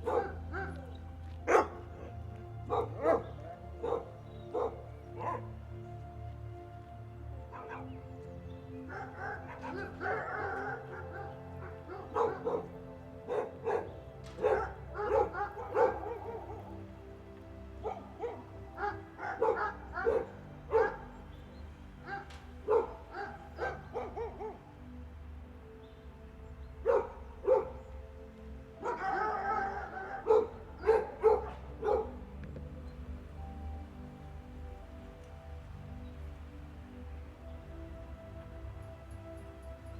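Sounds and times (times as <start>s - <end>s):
dog barking: 0.0s - 5.5s, 7.5s - 7.9s, 8.8s - 16.9s, 17.8s - 21.1s, 22.0s - 24.6s, 26.8s - 27.9s, 28.8s - 32.2s
background music with held notes: 0.0s - 39.9s.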